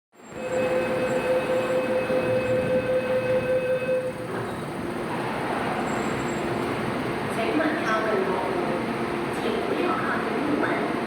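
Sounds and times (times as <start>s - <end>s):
train humming: 0.2s - 11.0s
steady electronic tone: 0.3s - 4.4s.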